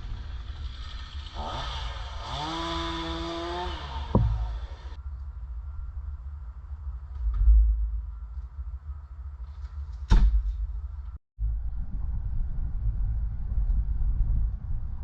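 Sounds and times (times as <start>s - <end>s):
chainsaw engine revving: 0.0s - 5.0s
sharp knock: 4.1s - 4.5s.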